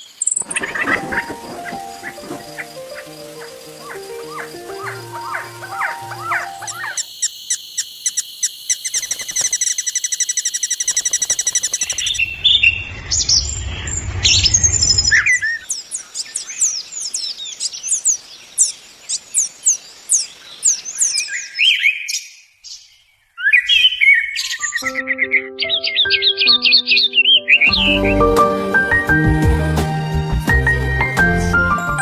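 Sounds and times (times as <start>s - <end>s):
birds chirping: 0.0s - 28.6s
low rumble: 11.8s - 15.6s.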